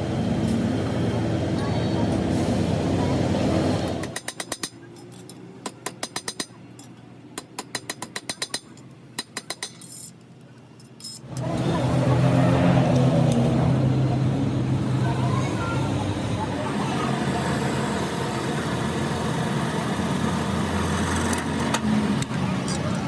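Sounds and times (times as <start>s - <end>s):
machine droning: 11.2s - 23.0s.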